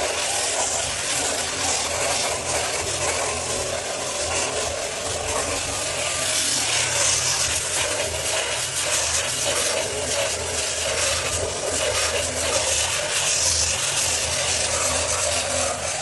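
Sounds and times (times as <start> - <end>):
floor sanding machine motor hum: 0.0 - 8.7.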